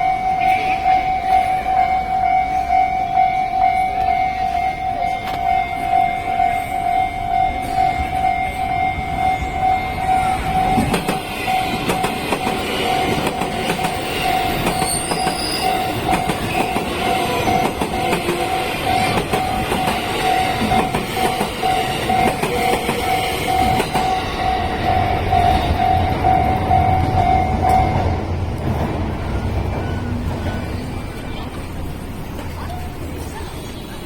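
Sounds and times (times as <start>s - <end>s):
crossing warning bell dinging: 0.0s - 34.0s
train wheels clattering: 10.5s - 34.0s.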